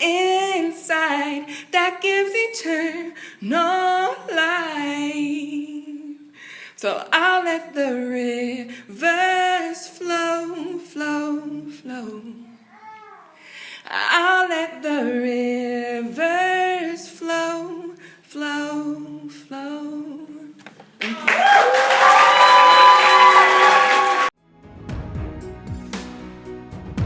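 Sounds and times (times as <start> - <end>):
woman singing unaccompanied: 0.0 - 12.6, 13.8 - 20.6
singer breathing: 1.5 - 1.7, 3.1 - 3.4, 6.3 - 6.8, 13.4 - 13.9.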